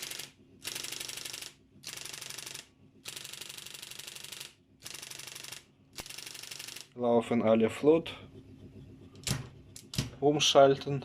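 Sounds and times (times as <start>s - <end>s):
electric typewriter rapid clicking: 0.0s - 7.0s.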